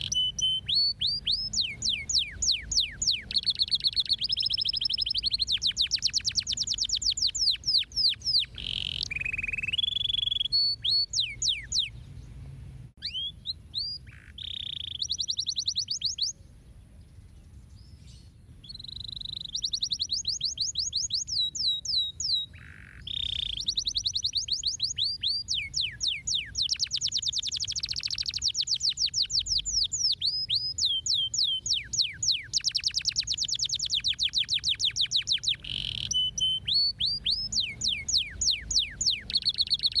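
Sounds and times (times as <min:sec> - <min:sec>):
canary singing trills: 0:00.0 - 0:12.4, 0:13.0 - 0:40.0.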